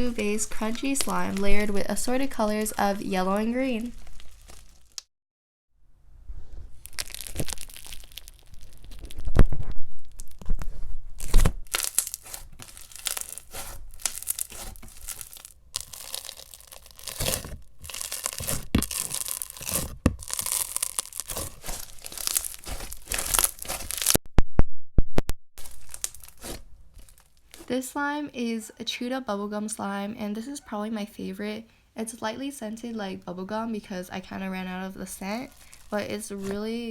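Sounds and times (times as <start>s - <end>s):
slime crackling and popping: 0.0s - 5.1s, 6.8s - 24.2s, 25.6s - 27.7s, 34.7s - 36.9s.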